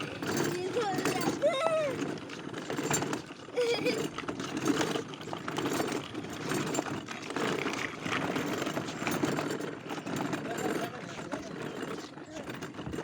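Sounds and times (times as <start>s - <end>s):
toy car clicking rattle: 0.0s - 9.3s.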